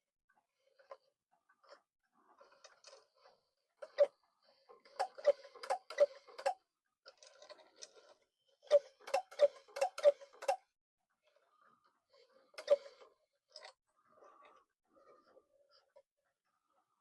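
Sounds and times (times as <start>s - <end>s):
clock mechanism clicking: 5.0s - 6.6s, 8.7s - 10.7s.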